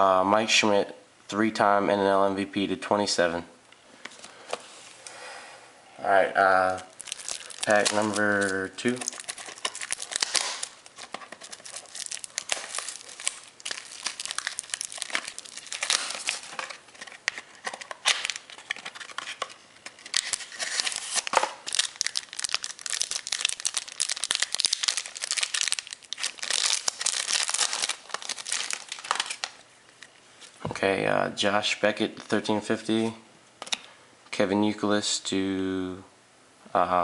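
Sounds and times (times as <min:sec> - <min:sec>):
wrapper tearing and crinkling: 0:06.6 - 0:29.6
cards rustling: 0:06.6 - 0:30.6.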